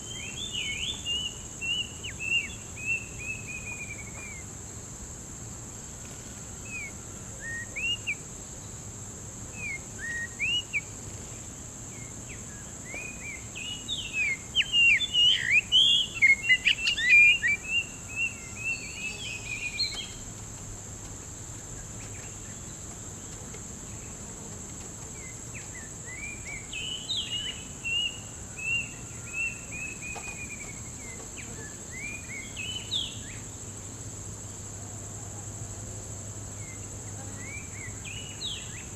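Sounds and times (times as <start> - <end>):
high insect drone: 0.0 - 38.9
magpie-robin whistled song: 12.9 - 17.9.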